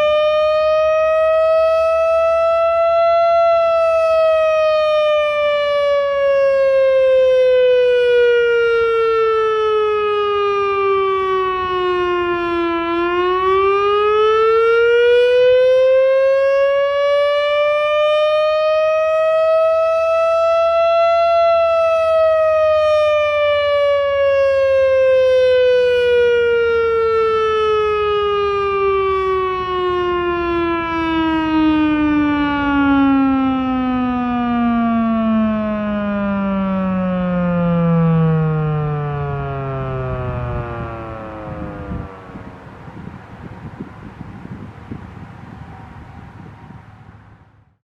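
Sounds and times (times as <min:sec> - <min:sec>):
warning siren slow wail: 0:00.0 - 0:47.8.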